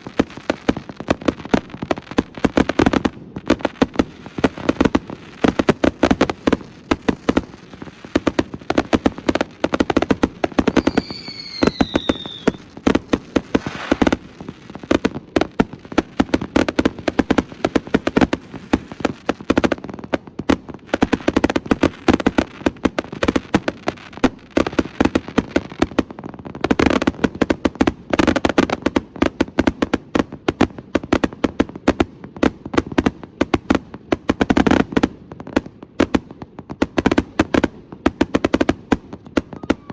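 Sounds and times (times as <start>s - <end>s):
fireworks bangs and crackle: 0.0s - 39.9s
falling firework whistle: 10.6s - 12.7s, 13.5s - 14.2s, 39.4s - 39.9s.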